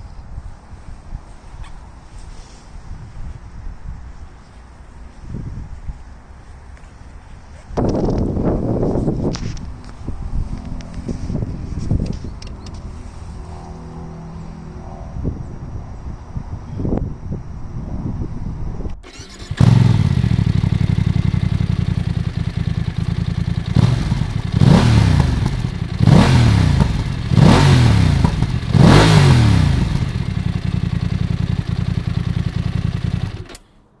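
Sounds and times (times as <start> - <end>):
motorcycle engine starting and revving: 19.0 - 33.7.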